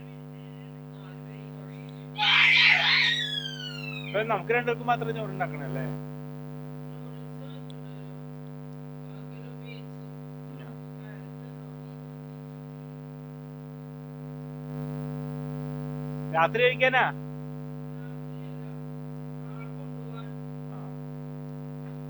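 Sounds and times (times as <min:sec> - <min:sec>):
electrical hum with tones: 0:02.0 - 0:06.0.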